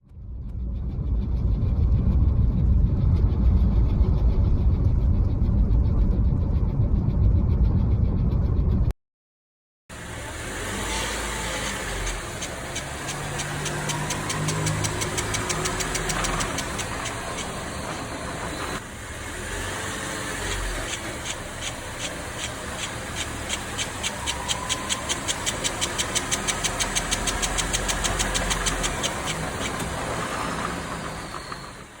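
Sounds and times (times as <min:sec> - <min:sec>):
car road and engine noise: 0:09.9 - 0:32.0
rapid regular ticking: 0:11.4 - 0:18.3, 0:20.4 - 0:30.0.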